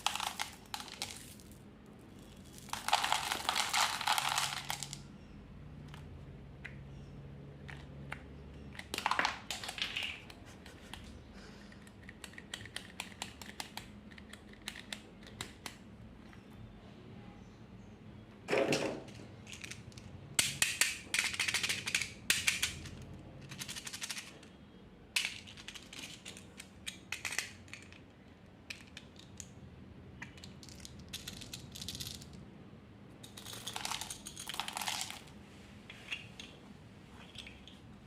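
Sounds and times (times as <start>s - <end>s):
hard candies rattling in a tub: 0.0s - 5.0s, 30.4s - 32.4s, 33.2s - 35.3s.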